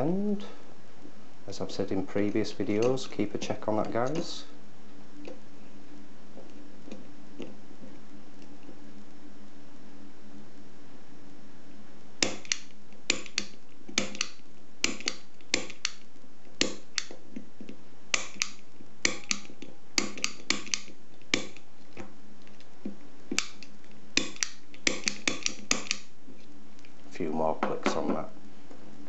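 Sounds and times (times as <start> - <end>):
faint steady hum: 0.0 - 29.0
lock pick gun snapping: 12.2 - 16.0, 18.1 - 21.6, 23.3 - 26.1.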